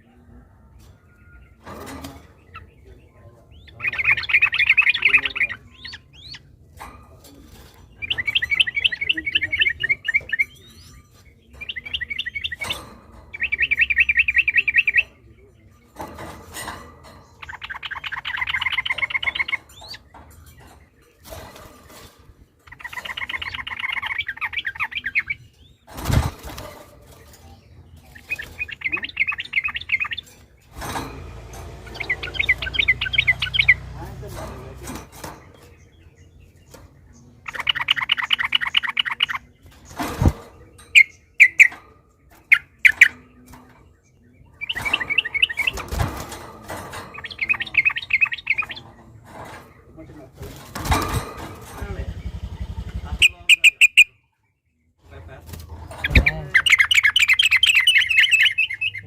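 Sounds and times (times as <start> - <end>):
bird singing bubbling phrases: 2.4 - 6.5, 8.0 - 10.8, 22.6 - 25.6, 28.1 - 30.2, 37.2 - 39.7, 47.2 - 48.8, 52.0 - 55.0, 56.0 - 59.0.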